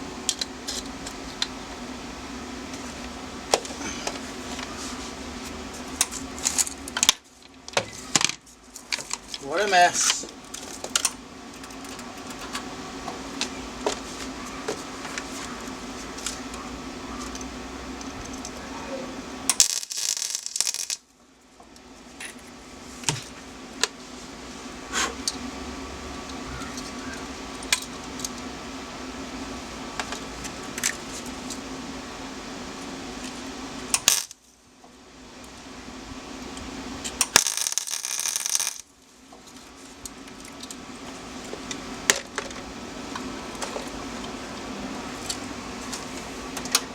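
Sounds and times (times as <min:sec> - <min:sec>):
steady hum: 0:00.0 - 0:46.9
metal parts clinking: 0:19.6 - 0:21.0.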